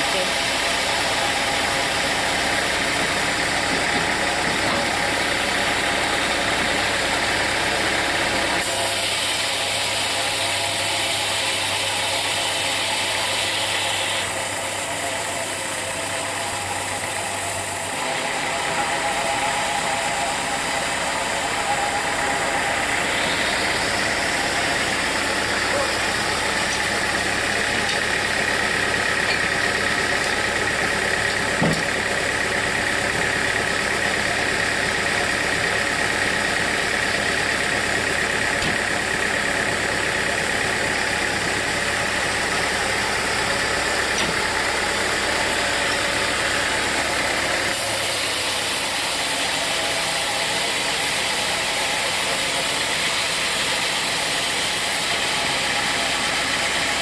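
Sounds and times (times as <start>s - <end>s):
constant machine whine: 0.0s - 57.0s
sawmill machinery running: 0.0s - 57.0s.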